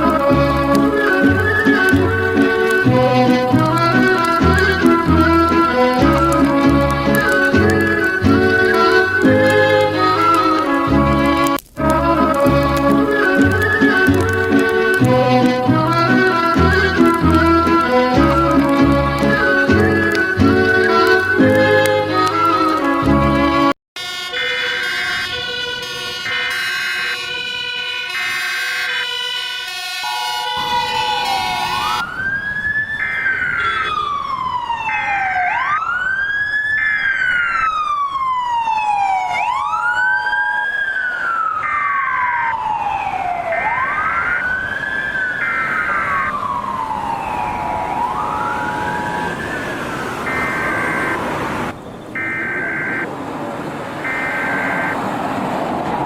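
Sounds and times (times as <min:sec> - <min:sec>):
wailing siren: 0:00.0 - 0:56.0
electronic alert tones: 0:52.2 - 0:53.0.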